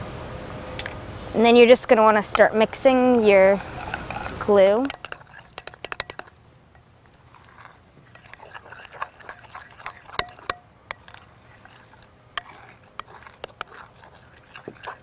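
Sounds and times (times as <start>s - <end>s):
spoon squelching and scraping: 1.9s - 15.0s
spoon clicking against container: 3.8s - 6.4s, 7.3s - 15.0s.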